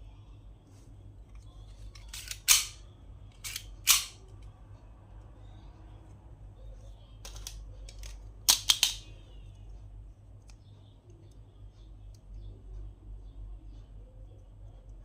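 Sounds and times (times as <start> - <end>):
plastic toys clicking and snapping: 1.9 - 4.5, 7.2 - 9.1.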